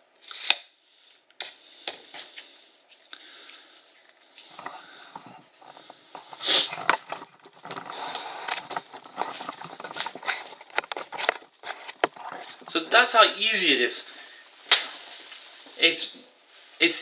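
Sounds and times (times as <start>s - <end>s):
rustling: 1.5s - 12.9s.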